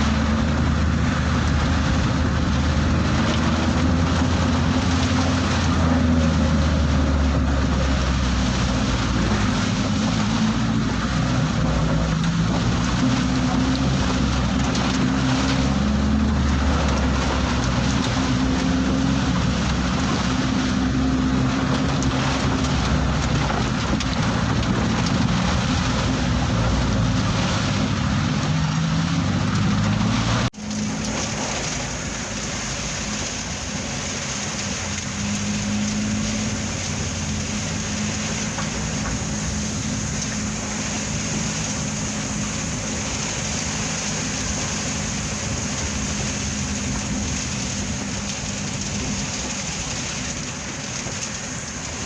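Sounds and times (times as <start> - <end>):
heavy rain pouring: 0.0 - 52.0
vehicle engine running: 0.0 - 52.0.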